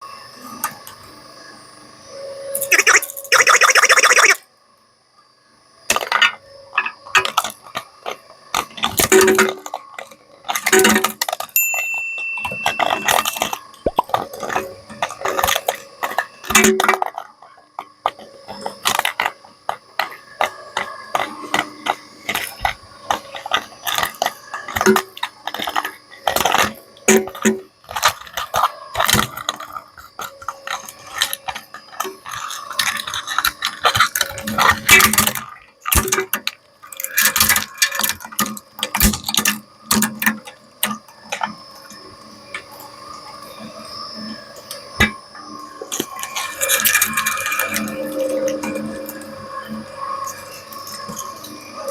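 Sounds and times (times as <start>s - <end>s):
shredder cracking plastic and metal: 5.9s - 42.6s, 45.9s - 49.4s.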